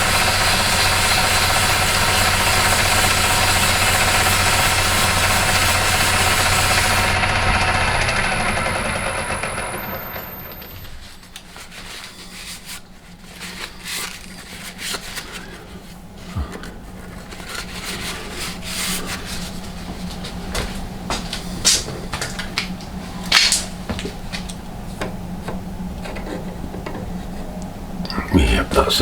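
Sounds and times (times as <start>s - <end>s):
lathe humming: 0.0s - 10.8s.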